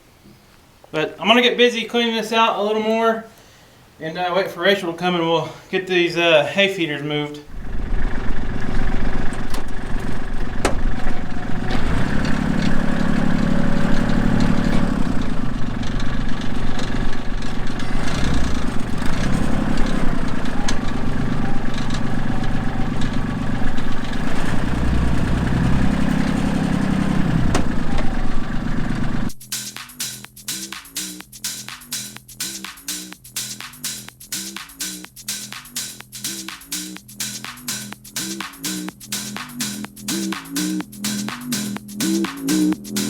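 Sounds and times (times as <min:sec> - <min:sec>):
diesel tractor engine: 0:07.5 - 0:29.4.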